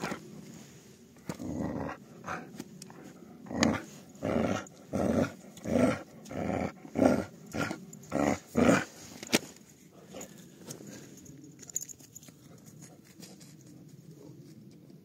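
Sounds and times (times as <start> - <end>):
puppy growling: 1.3 - 9.0.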